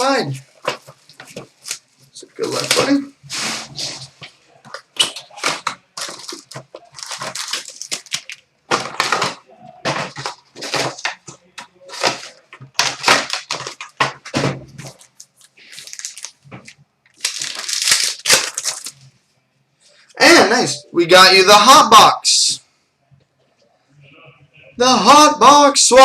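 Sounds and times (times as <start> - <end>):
plastic wrapping crinkling and tearing: 0.3 - 19.2.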